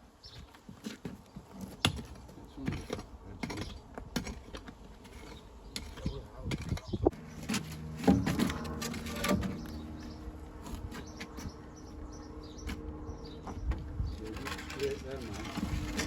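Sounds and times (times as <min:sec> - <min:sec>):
stones and masonry tools knocking: 0:01.0 - 0:09.7
low buzzing hum: 0:07.0 - 0:16.0.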